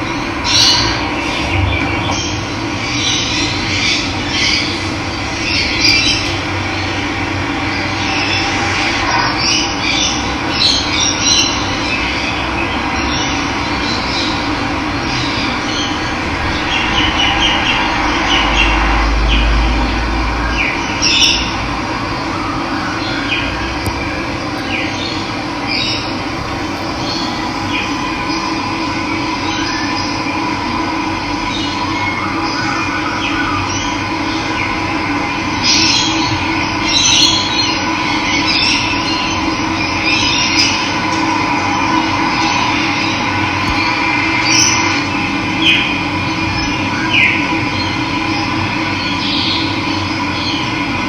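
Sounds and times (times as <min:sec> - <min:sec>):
birds chirping: 0:22.9 - 0:30.4
brief low rumble: 0:23.9 - 0:29.9.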